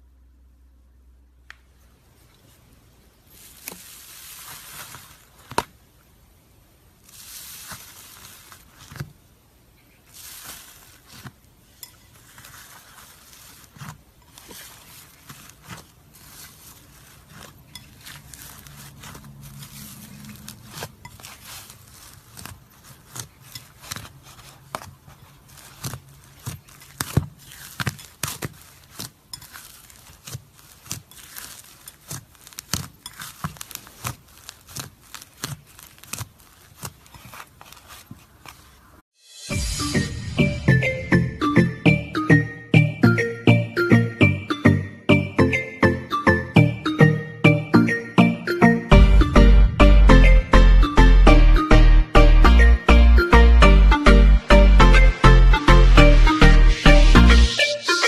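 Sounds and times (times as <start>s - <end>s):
slime squishing by hand: 1.6s - 39.0s
slime crackles and clicks: 10.2s - 38.6s.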